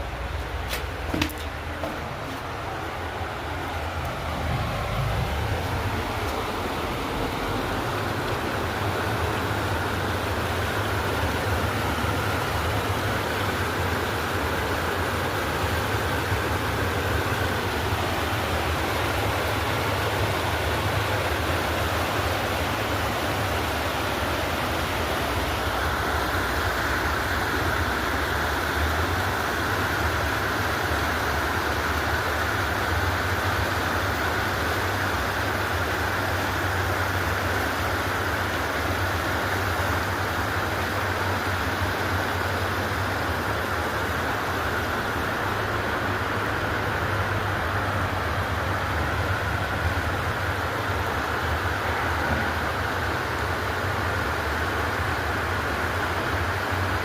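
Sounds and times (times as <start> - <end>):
river water rushing: 0.0 - 57.0.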